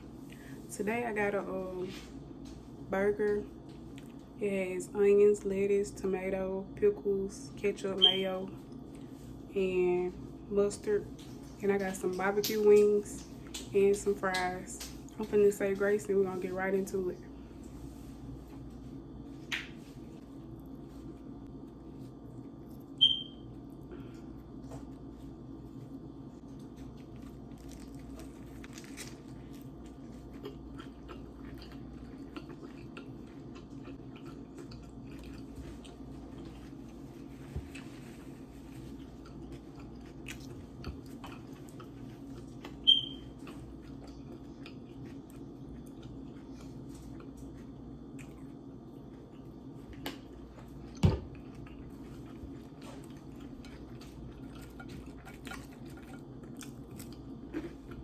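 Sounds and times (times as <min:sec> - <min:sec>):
steady low hum: 0:00.0 - 0:58.0
chewing and biting food: 0:23.7 - 0:58.0.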